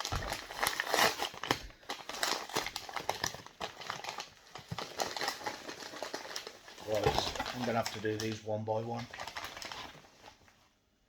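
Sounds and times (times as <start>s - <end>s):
packaging rustling and crinkling: 0.0s - 10.7s.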